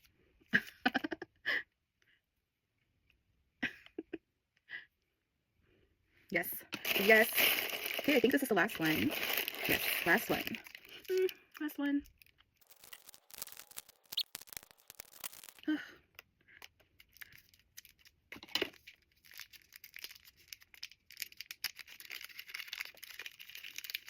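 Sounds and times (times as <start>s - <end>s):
wrapping crinkling and tearing: 6.8s - 24.0s.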